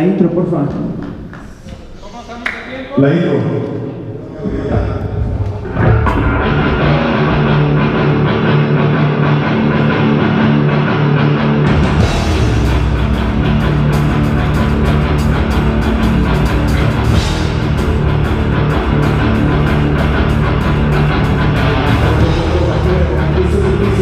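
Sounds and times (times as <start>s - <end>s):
heavy rock band playing: 5.2s - 24.0s.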